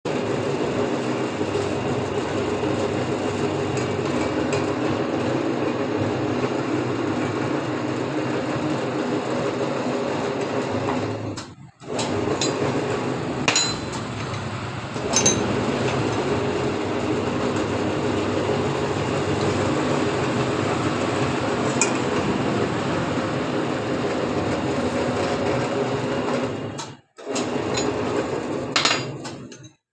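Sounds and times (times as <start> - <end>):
steady mechanical buzz: 0.1 - 29.2.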